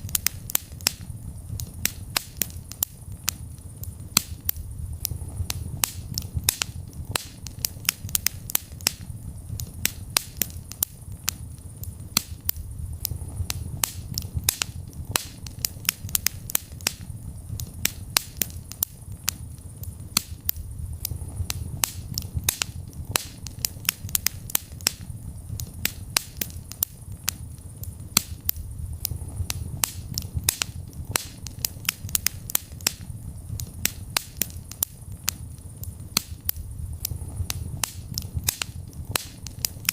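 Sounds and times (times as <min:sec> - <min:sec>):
low rumble of flames: 0:00.0 - 0:39.9
wood fire crackling and popping: 0:00.0 - 0:39.9.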